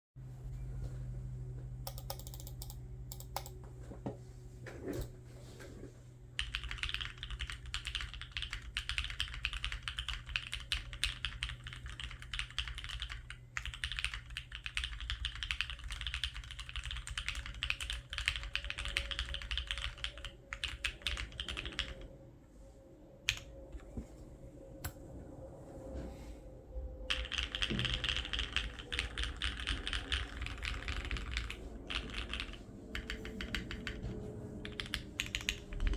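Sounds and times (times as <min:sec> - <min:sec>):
typing on mechanical keyboard: 0:01.9 - 0:03.5, 0:06.4 - 0:22.1, 0:27.1 - 0:34.0, 0:34.6 - 0:35.9.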